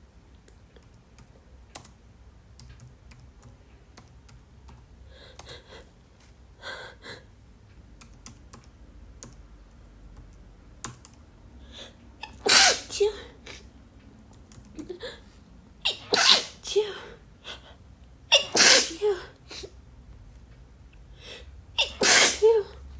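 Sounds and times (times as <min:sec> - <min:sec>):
computer keyboard typing: 0:00.8 - 0:05.5, 0:08.0 - 0:11.2, 0:14.3 - 0:14.9.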